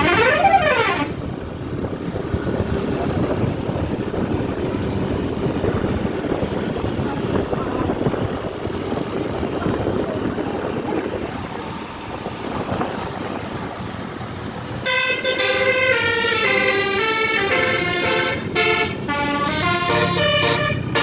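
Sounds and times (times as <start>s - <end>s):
bus horn playing melody: 0.0s - 1.3s, 14.8s - 21.0s
engine and road rumble: 0.0s - 21.0s.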